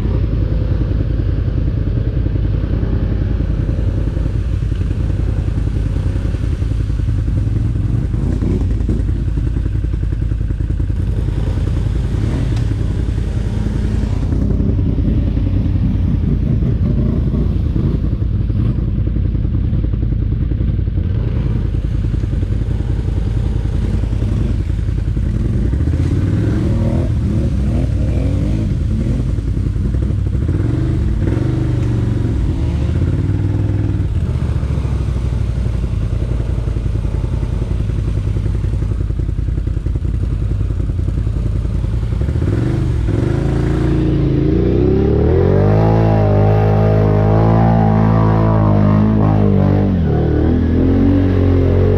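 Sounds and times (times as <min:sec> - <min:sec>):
atv engine revving: 0:00.0 - 0:18.9, 0:20.6 - 0:51.9.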